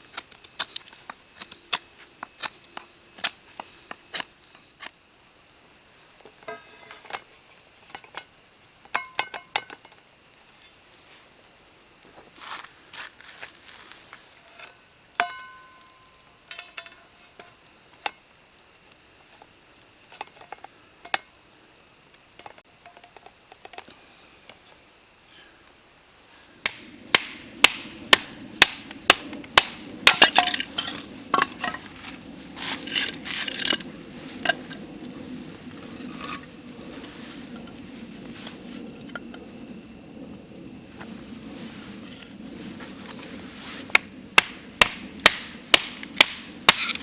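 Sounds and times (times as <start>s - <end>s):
metal cookware clinking: 15.2s - 17.1s.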